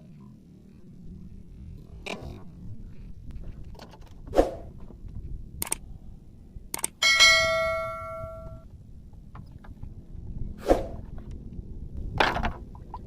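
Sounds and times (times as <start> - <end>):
metallic ring: 7.0 - 8.7.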